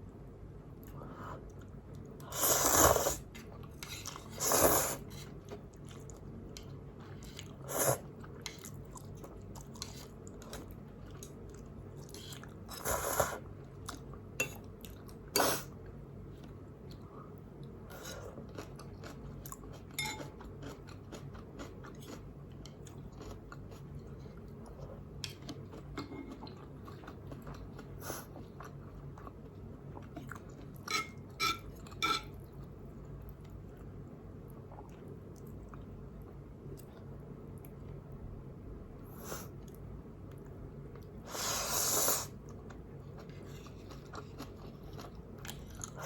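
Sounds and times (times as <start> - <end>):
chewing and slurping noodles: 17.9 - 31.0, 41.2 - 46.0
utensil clinking against bowl: 20.0 - 20.4, 30.9 - 32.4.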